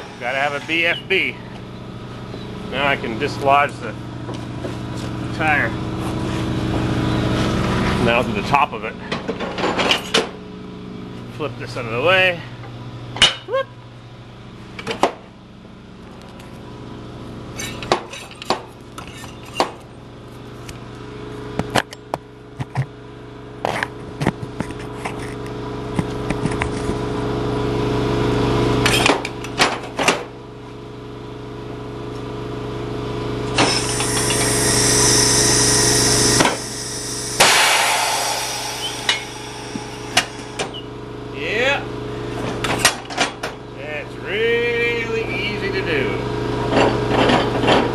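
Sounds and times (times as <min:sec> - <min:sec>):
tire machine motor hum: 0:00.0 - 0:11.4, 0:30.3 - 0:43.8
air hissing bursts: 0:33.6 - 0:40.9.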